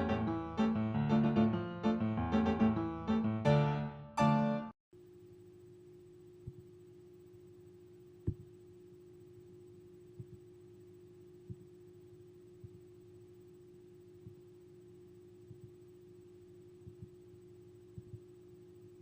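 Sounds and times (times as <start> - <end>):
steady low hum: 5.0 - 19.0.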